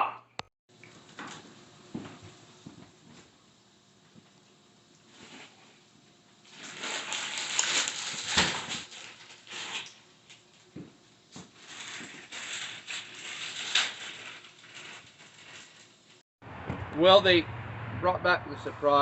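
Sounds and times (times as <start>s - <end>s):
rustling and scraping: 5.1s - 5.8s, 6.4s - 16.2s.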